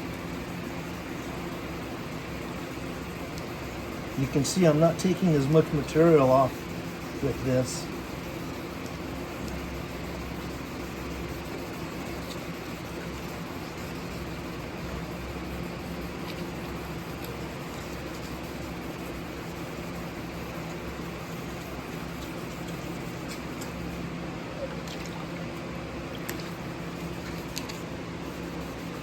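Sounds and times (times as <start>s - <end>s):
wet sanding rubbing hiss: 3.9s - 8.6s.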